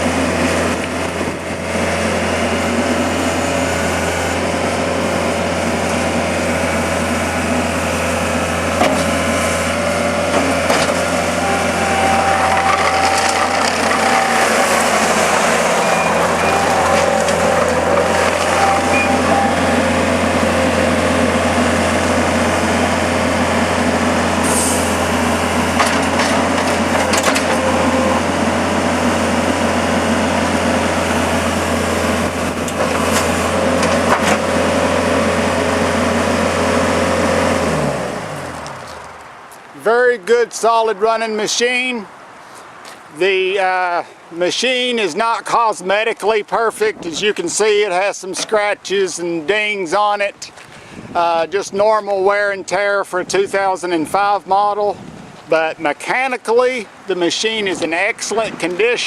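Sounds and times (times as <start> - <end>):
diesel engine running: 0.0 - 39.8
clicks and clanks: 10.3 - 11.0, 12.0 - 19.5, 25.8 - 27.7
high-pitched whine: 10.7 - 21.2.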